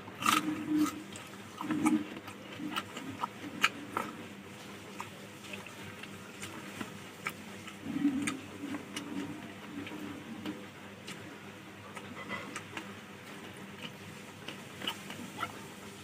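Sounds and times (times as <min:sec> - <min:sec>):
chewing with wet mouth clicks: 0:00.2 - 0:04.2, 0:04.9 - 0:11.3, 0:11.9 - 0:15.6.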